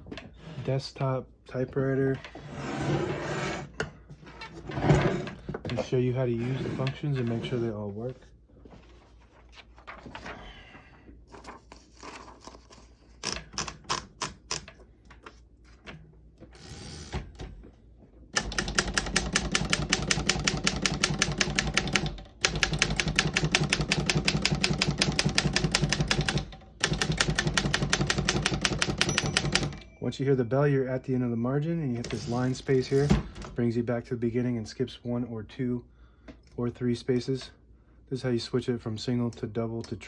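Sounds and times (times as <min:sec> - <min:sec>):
typewriter keystrokes: 0:18.4 - 0:29.9.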